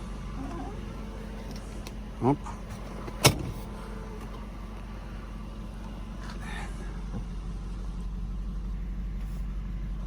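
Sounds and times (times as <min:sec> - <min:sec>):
seat motor humming: 0:00.0 - 0:07.3.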